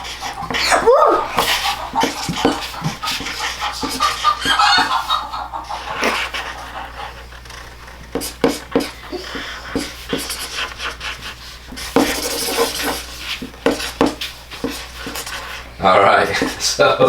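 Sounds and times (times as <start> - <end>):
chicken clucking: 0.0 - 7.3.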